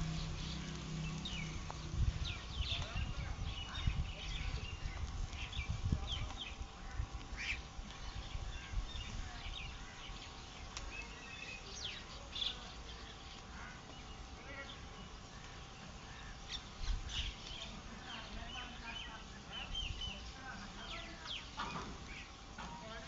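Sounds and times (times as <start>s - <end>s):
low rumble: 0.0s - 10.9s
birds chirping: 0.0s - 23.0s.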